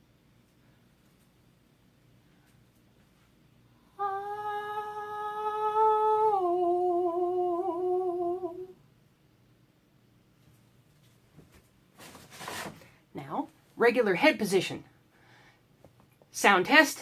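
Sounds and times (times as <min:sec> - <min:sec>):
person humming: 0:04.0 - 0:08.8.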